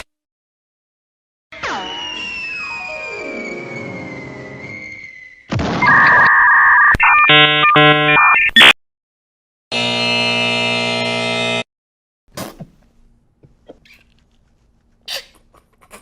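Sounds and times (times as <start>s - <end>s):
electronic tones and beeps: 5.8s - 8.8s
steady buzzer tone: 7.3s - 8.2s, 9.7s - 11.7s.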